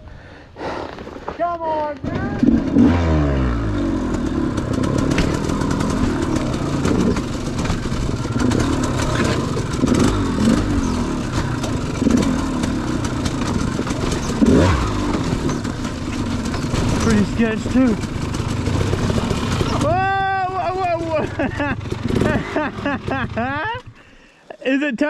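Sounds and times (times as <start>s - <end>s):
dirt bike engine revving: 2.1s - 23.8s
bike clattering over rocks: 4.1s - 19.9s.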